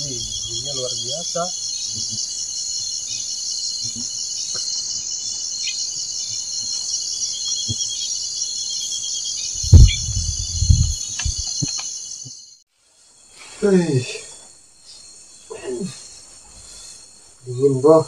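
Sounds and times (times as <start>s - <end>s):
crickets trilling: 0.0s - 18.0s
loud low thump: 9.6s - 11.4s.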